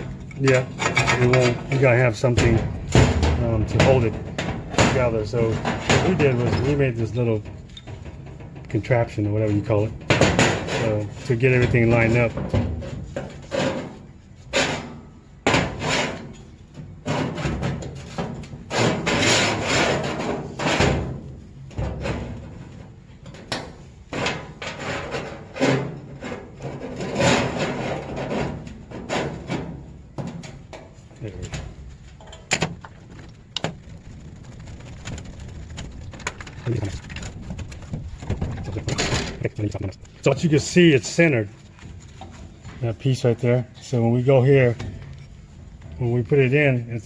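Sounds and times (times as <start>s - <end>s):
metal parts scraping and knocking: 0.0s - 41.1s
steel parts clicking and knocking: 30.4s - 40.3s.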